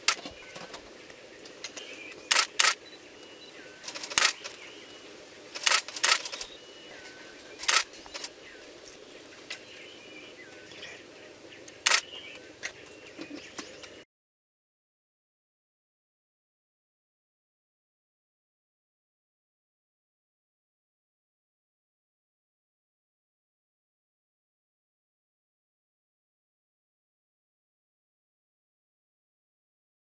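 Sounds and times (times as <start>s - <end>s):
faint bird chirps: 0.1s - 14.1s
camera shutter clicks: 2.3s - 2.8s, 3.8s - 4.6s, 5.6s - 6.5s, 7.6s - 8.3s, 11.8s - 12.1s.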